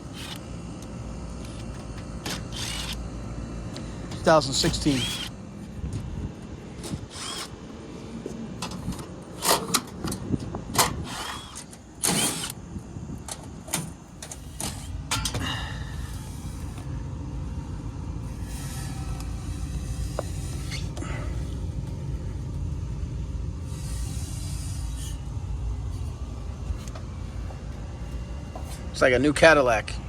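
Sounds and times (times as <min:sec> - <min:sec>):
low mechanical rumble: 0:00.0 - 0:30.0
metal parts clanking: 0:08.6 - 0:12.6, 0:13.3 - 0:15.5.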